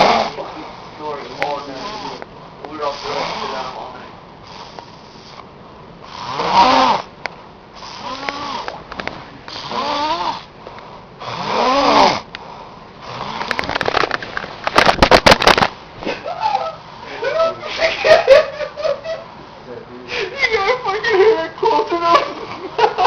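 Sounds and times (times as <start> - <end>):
person snoring loudly: 0.0 - 0.4, 6.0 - 7.1, 7.8 - 8.8, 9.5 - 10.5, 11.2 - 12.3, 13.0 - 13.7
sharp crackles: 13.5 - 15.8.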